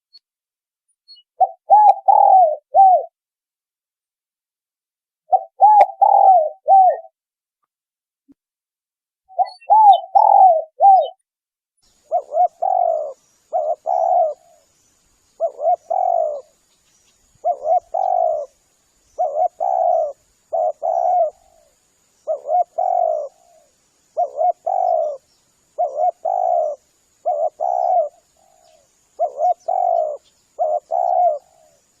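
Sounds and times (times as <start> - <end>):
dove cooing: 1.4 - 3.2, 5.3 - 7.1, 9.3 - 11.2, 12.0 - 14.7, 15.4 - 16.6, 17.3 - 18.6, 19.2 - 32.0.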